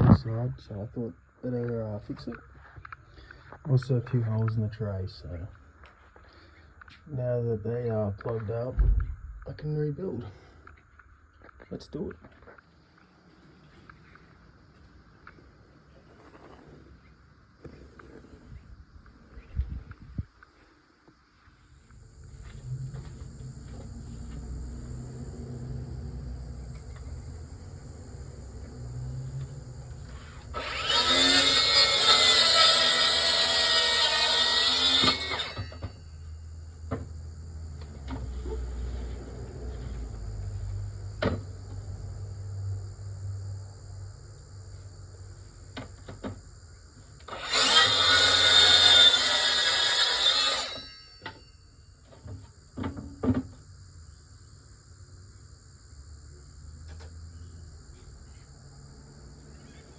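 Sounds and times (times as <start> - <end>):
low hum: 8.7 - 11.1
power drill running: 30.3 - 36.0, 47.2 - 51.1.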